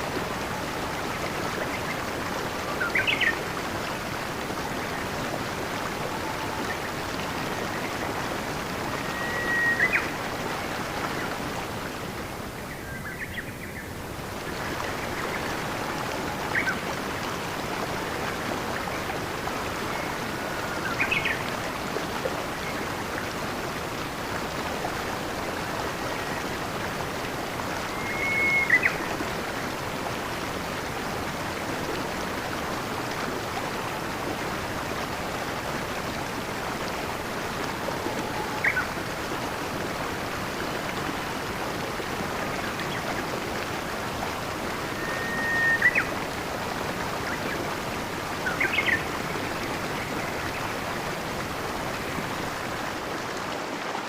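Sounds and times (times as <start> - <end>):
stream rushing: 0.0 - 54.0
bird chirps and whistles: 9.1 - 10.0, 28.0 - 28.9, 45.0 - 46.0.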